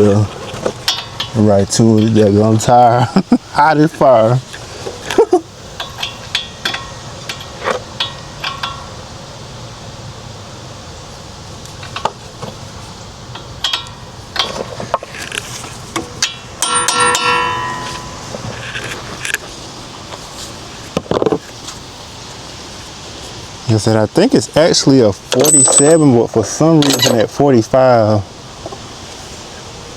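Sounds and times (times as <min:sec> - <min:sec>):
ringing metal clang: 0:00.9 - 0:01.4, 0:05.8 - 0:09.0, 0:16.1 - 0:18.8, 0:25.4 - 0:26.2
metal tools clinking: 0:05.1 - 0:08.9, 0:16.0 - 0:19.4, 0:25.3 - 0:26.2, 0:26.8 - 0:27.3.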